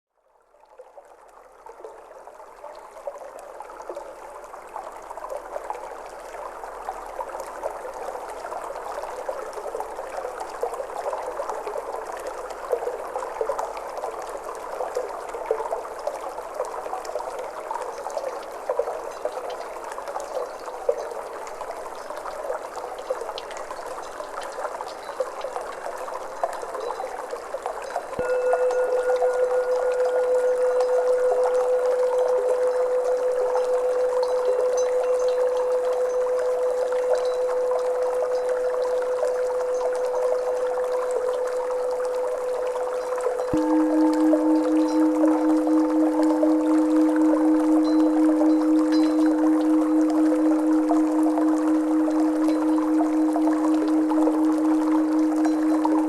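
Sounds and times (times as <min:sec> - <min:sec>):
water trickling and splashing: 0:00.7 - 0:56.0.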